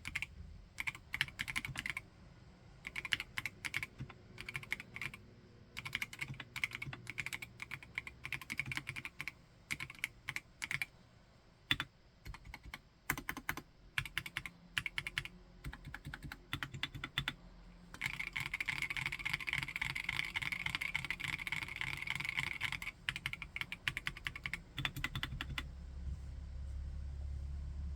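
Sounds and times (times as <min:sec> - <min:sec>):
mechanical keyboard typing: 0:00.0 - 0:02.0, 0:02.8 - 0:05.2, 0:05.8 - 0:10.9, 0:11.7 - 0:17.4, 0:18.0 - 0:25.7.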